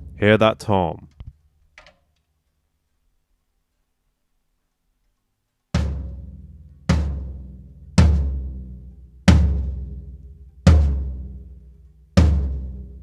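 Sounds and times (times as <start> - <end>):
floor tom drum hits: 5.8 - 8.6, 10.7 - 11.3.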